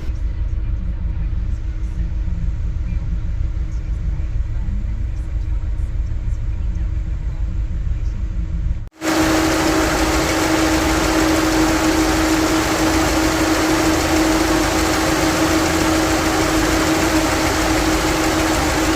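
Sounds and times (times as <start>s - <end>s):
constant whine: 0.0s - 18.9s
car engine idling with a misfire: 9.0s - 18.9s.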